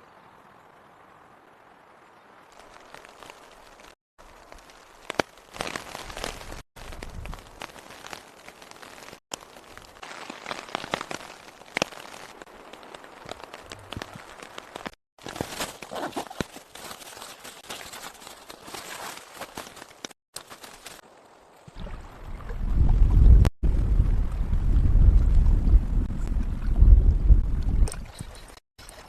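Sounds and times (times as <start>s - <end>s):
rain falling: 0.6s - 15.0s.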